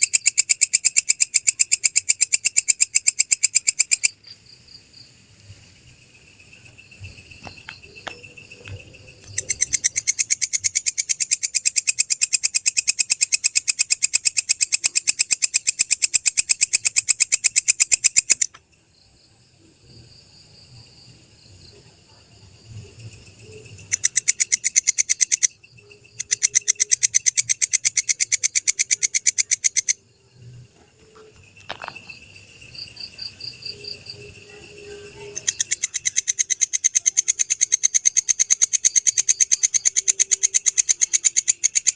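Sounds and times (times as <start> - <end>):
grasshopper clicking call: 0.0 - 5.6, 6.3 - 18.7, 22.7 - 41.9.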